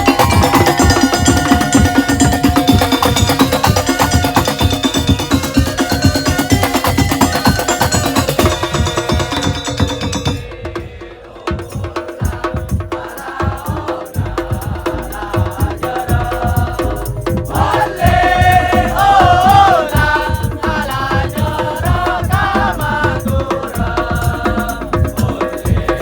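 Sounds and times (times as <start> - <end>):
wavering melody: 0.0 - 10.9
drums and slit-drums rhythm: 0.0 - 26.0.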